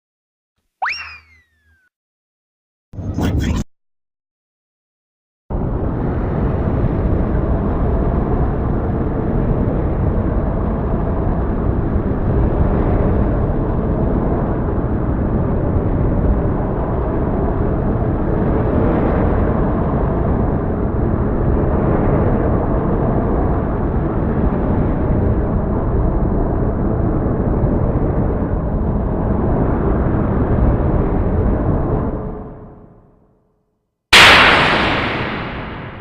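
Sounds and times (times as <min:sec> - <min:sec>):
loud low rumble: 0:34.2 - 0:36.0.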